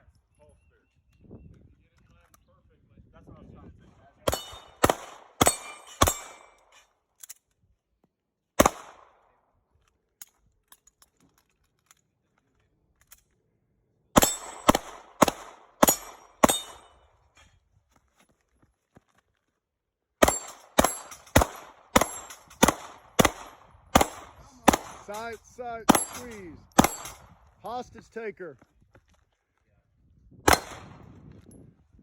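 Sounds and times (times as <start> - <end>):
gunshots: 4.3 - 6.5, 8.6 - 9.2, 14.2 - 16.9, 20.2 - 27.8, 30.5 - 31.1.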